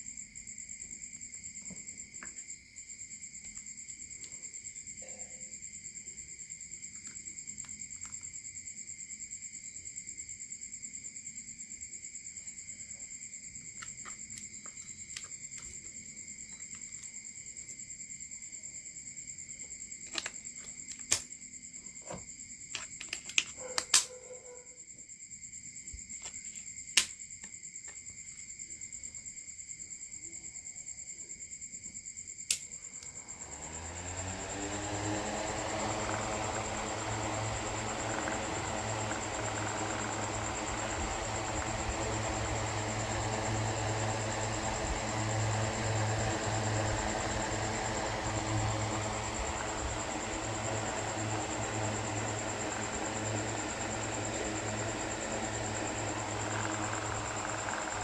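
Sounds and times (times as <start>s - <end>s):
small parts clicking: 20.0s - 21.3s, 22.7s - 24.2s
small motor spinning up: 32.5s - 58.0s.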